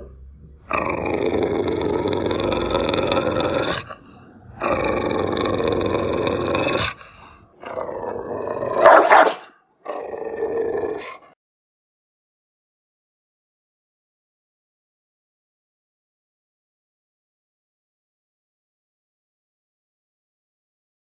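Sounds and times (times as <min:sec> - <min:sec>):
dog growling and snarling: 0:00.0 - 0:11.4.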